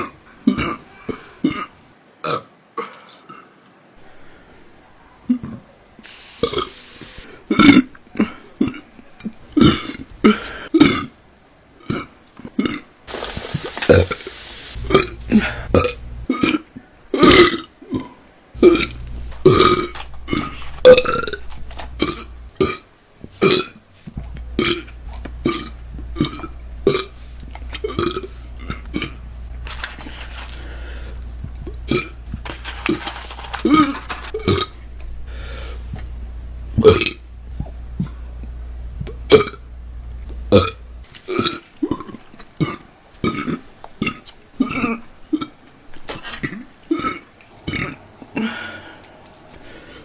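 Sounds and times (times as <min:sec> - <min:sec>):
woman burping loudly: 0:00.0 - 0:03.0, 0:07.4 - 0:11.2, 0:11.8 - 0:13.0, 0:14.8 - 0:29.3, 0:30.7 - 0:32.4, 0:39.0 - 0:39.6, 0:40.5 - 0:45.6, 0:46.9 - 0:48.6
low background hum: 0:03.8 - 0:50.0.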